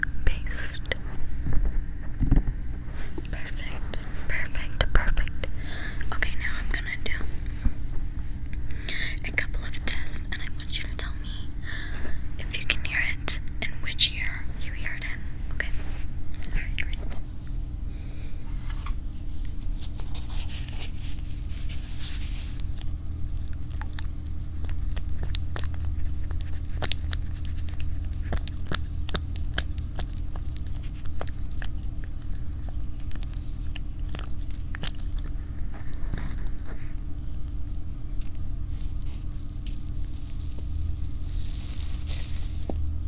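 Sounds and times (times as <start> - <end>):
steady low hum: 0.0 - 43.0
soft rustles: 0.7 - 28.4, 30.0 - 43.0
small clicks and crackles: 18.9 - 43.0.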